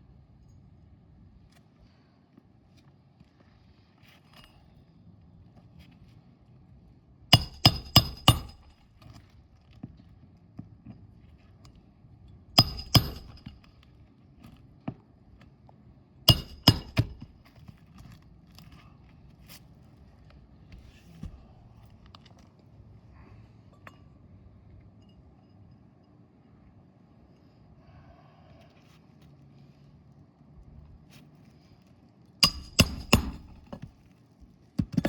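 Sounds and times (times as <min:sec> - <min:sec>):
hammer blows with metallic ring: 0:07.4 - 0:08.7, 0:12.6 - 0:13.6, 0:16.3 - 0:17.3, 0:32.4 - 0:33.7.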